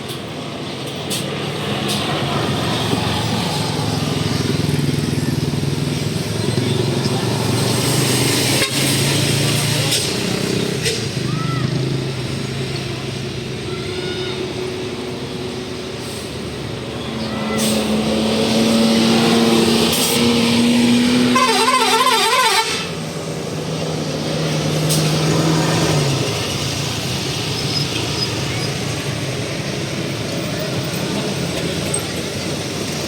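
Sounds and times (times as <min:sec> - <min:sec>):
bus engine: 0:00.0 - 0:33.0
musical air horn playing a tune: 0:21.2 - 0:23.0.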